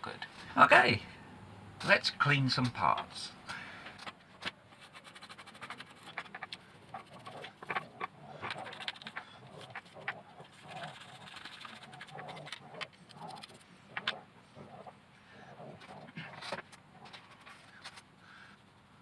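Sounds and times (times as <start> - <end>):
scratching and scrubbing: 4.1 - 18.2
plastic parts clicking and knocking: 5.5 - 14.2.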